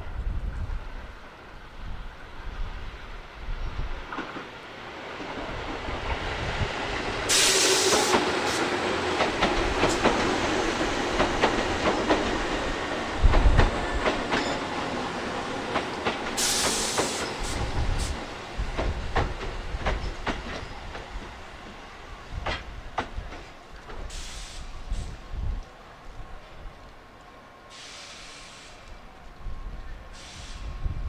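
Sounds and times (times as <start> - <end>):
train wheels clicking over rail joints: 5.2 - 25.7
short bursts of hiss: 7.3 - 8.7, 16.4 - 18.2, 24.1 - 25.1, 27.7 - 28.9, 30.1 - 30.8.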